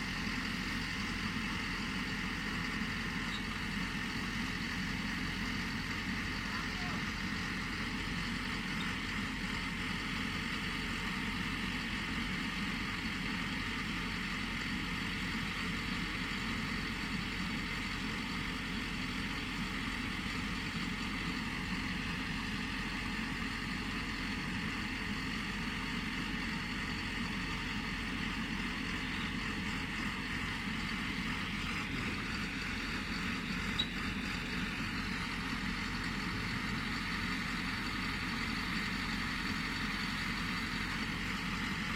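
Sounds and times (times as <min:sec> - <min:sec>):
machine engine running: 0:14.7 - 0:41.9.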